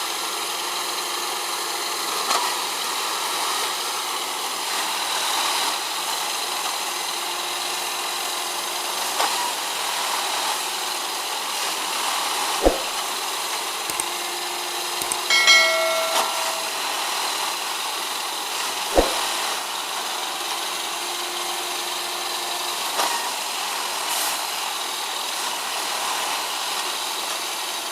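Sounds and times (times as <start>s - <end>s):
sharp thumps: 12.6s - 13.0s, 19.0s - 19.2s.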